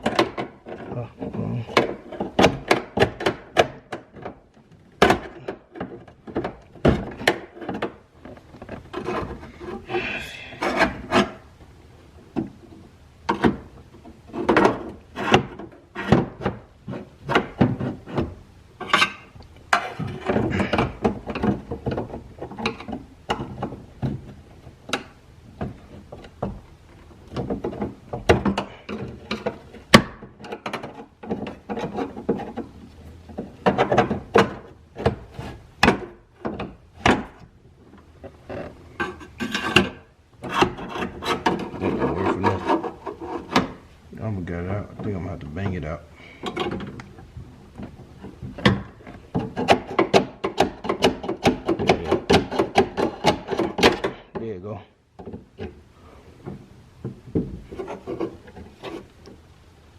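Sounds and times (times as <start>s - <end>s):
plastic clicks and knocks: 0.0s - 1.0s, 1.7s - 9.5s, 46.4s - 54.5s
plastic scraping on metal: 0.0s - 11.5s, 12.1s - 54.5s, 55.2s - 59.9s.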